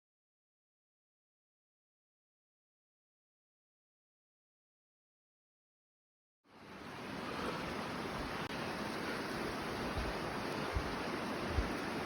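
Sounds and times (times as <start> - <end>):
waterfall rushing: 6.6 - 12.0.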